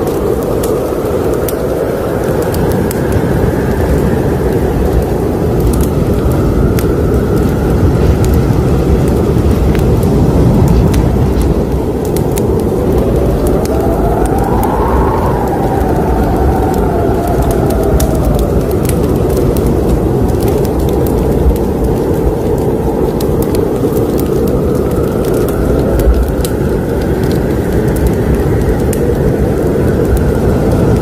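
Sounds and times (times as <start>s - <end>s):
fire rumbling and crackling: 0.0s - 31.0s
faint rising and falling whine: 12.4s - 20.0s.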